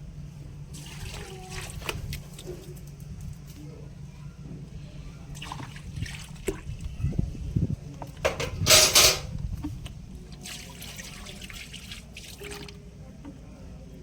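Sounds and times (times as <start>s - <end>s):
water splashing and trickling: 0.7s - 3.0s, 5.2s - 7.0s, 9.7s - 12.9s.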